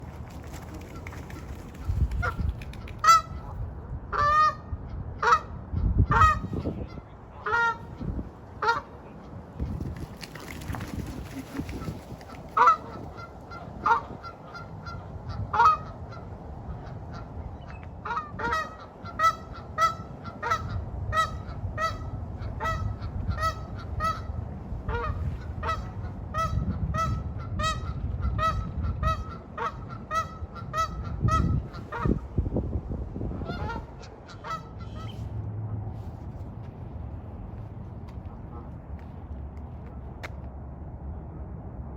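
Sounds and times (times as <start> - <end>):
geese honking: 3.0 - 5.5, 6.1 - 8.0, 11.8 - 17.3, 18.0 - 32.2, 33.4 - 35.3.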